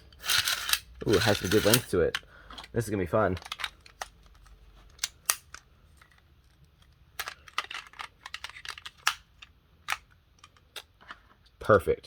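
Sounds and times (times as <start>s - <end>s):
hard plastic clicking and rattling: 0.4s - 6.6s, 7.2s - 11.2s.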